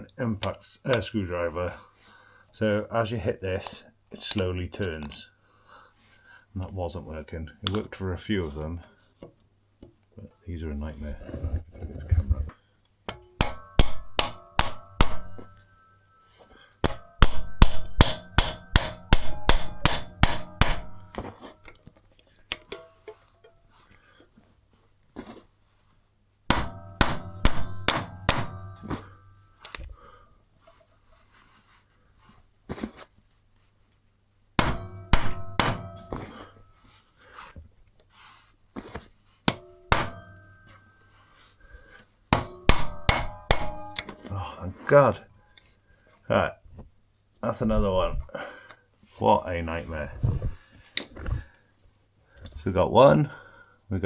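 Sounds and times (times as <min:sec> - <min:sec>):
hammer striking impact screwdriver: 0:13.1 - 0:15.7, 0:16.8 - 0:21.3, 0:26.5 - 0:29.2, 0:34.6 - 0:36.3.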